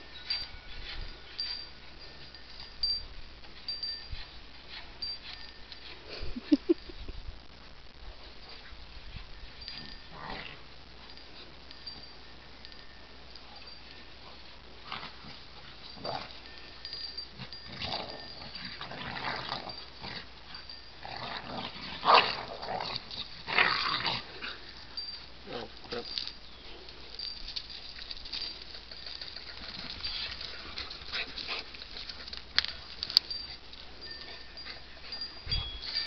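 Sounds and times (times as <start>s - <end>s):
dogs making play noises: 8.2s - 12.1s, 13.4s - 36.0s.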